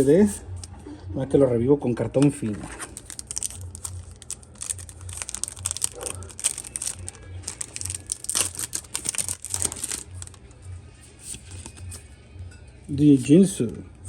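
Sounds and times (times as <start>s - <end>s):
foil wrapper crinkling and tearing: 2.8s - 10.5s.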